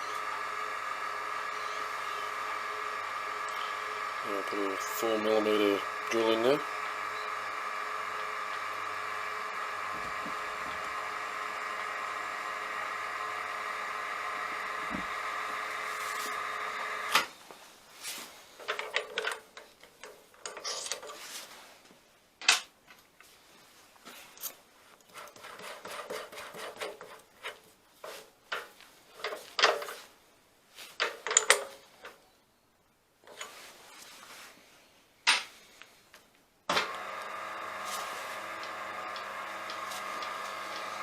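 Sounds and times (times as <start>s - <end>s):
milling machine whine: 0.0s - 17.3s, 36.7s - 41.0s
metallic clicks and knocks: 31.0s - 32.2s.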